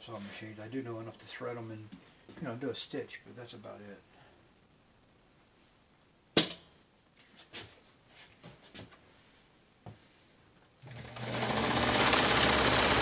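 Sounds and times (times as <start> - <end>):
sewing machine stitching: 10.8 - 13.0.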